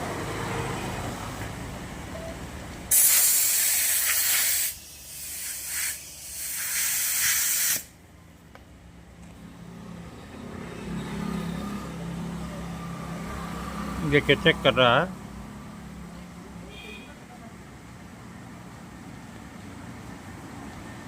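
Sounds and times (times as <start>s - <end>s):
compressed air hissing from hose: 2.9s - 8.0s.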